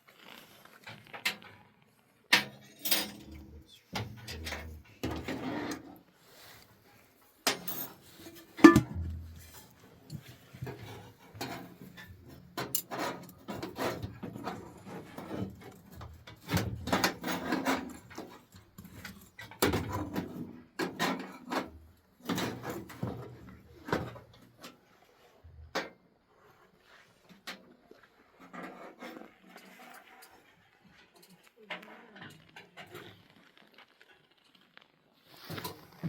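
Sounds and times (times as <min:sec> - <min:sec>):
objects knocking and clattering: 0:07.5 - 0:14.6.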